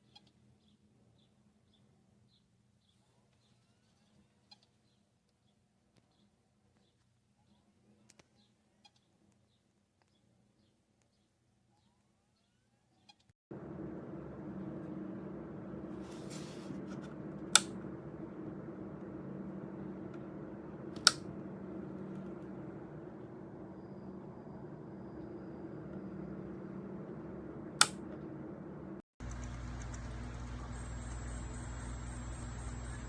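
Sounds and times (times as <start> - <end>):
hard drives humming: 13.5 - 33.0
sharp clicks: 13.6 - 30.1.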